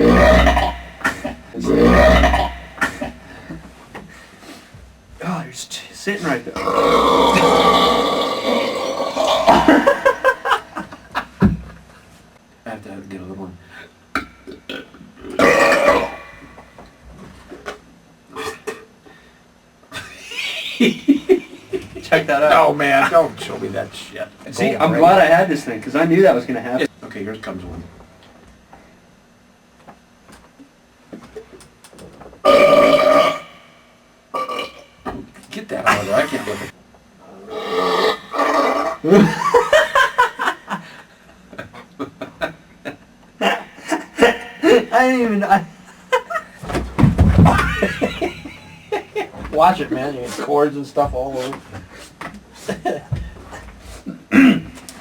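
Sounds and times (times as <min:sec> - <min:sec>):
person belching loudly: 0:00.0 - 0:03.2, 0:06.6 - 0:10.3, 0:14.4 - 0:16.6, 0:32.4 - 0:33.7, 0:34.4 - 0:34.8, 0:37.4 - 0:39.5, 0:54.3 - 0:54.8
person laughing: 0:09.4 - 0:11.4, 0:20.0 - 0:22.1, 0:39.0 - 0:44.9, 0:47.5 - 0:49.4, 0:52.6 - 0:53.4.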